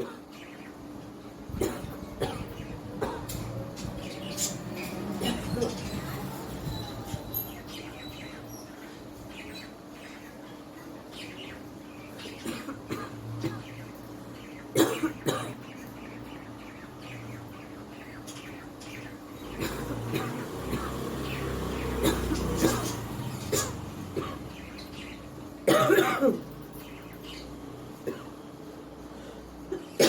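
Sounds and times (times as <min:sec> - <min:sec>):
woman coughing: 0:01.6 - 0:03.3, 0:05.2 - 0:05.8, 0:12.4 - 0:13.6, 0:14.7 - 0:15.6, 0:25.7 - 0:26.5.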